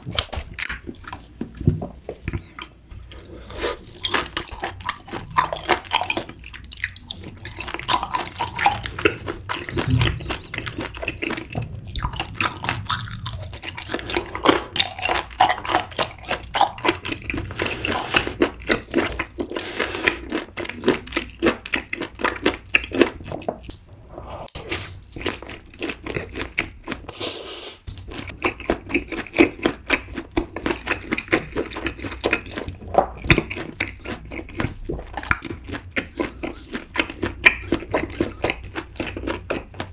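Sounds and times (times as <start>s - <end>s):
wet chewing and mouth smacking: 0.0s - 23.8s, 24.7s - 27.2s, 27.9s - 39.9s.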